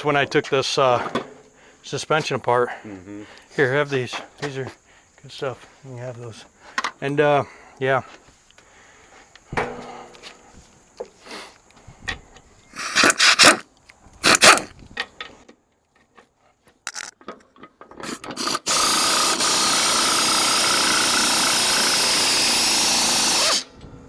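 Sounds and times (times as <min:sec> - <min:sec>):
pneumatic air ratchet: 0:12.8 - 0:13.6, 0:14.2 - 0:14.7, 0:18.0 - 0:23.8.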